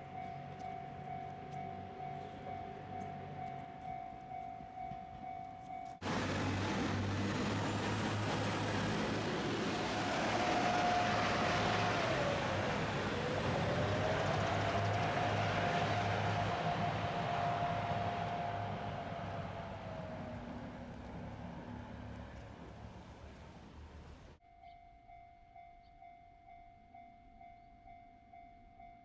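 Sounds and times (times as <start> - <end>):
level crossing warning bell: 0.0 - 6.1
train passing close by: 0.0 - 24.4.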